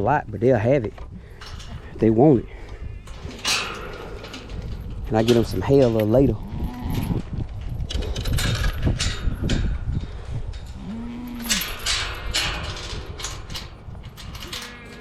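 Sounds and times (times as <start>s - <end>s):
livestock knocking and rustling: 0.9s - 15.0s
farm animal low call: 10.8s - 11.8s.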